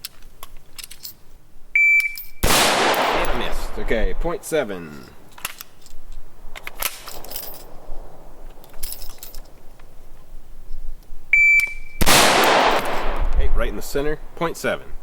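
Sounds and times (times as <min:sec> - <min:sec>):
loud rifle shot: 0:02.4 - 0:04.6, 0:12.0 - 0:14.4
faint handling clicks: 0:05.0 - 0:10.0
short high timer beep: 0:11.4 - 0:12.0.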